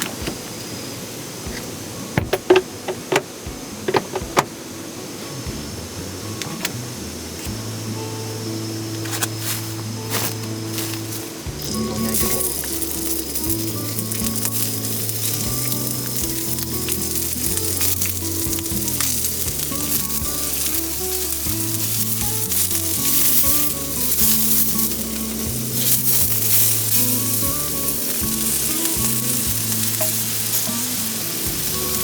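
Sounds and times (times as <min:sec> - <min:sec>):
background music with low notes: 0:00.0 - 0:32.0
food sizzling in a pan: 0:08.4 - 0:32.0.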